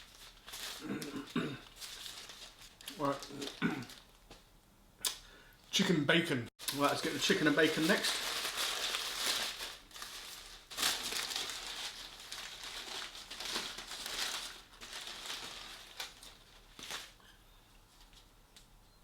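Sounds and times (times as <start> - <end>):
plastic packaging crinkling: 0.0 - 4.4, 6.6 - 17.3.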